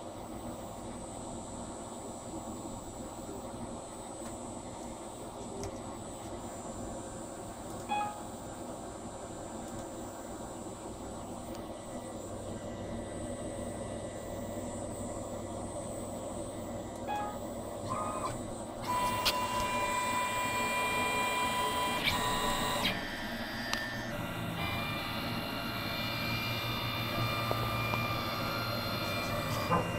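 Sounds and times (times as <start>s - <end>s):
steady electrical hum: 0.0s - 29.9s
stepper motors whining: 17.1s - 29.9s.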